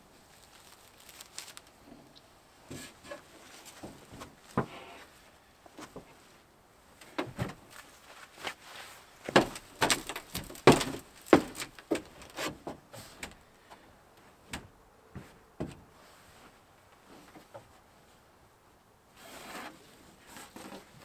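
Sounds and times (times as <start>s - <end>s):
knocks and clunks: 9.3s - 12.8s.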